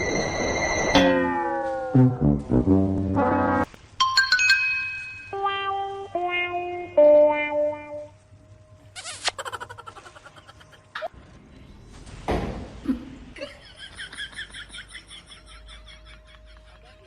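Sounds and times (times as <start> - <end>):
person laughing: 9.0 - 11.1.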